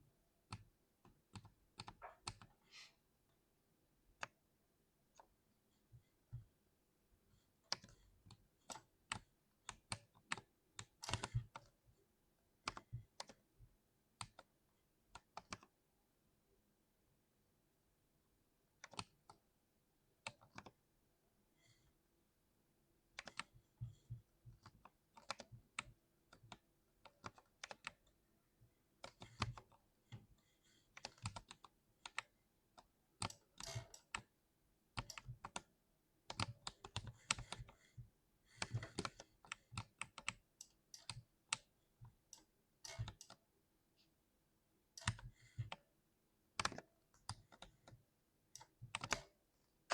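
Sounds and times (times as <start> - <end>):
mechanical keyboard typing: 8.7 - 11.8, 12.6 - 13.4, 18.8 - 19.4, 23.2 - 23.9, 24.6 - 28.0, 30.9 - 32.3, 33.2 - 34.3, 35.0 - 35.7, 36.3 - 37.8, 38.6 - 41.7, 42.3 - 43.4, 45.0 - 45.8, 46.6 - 49.3.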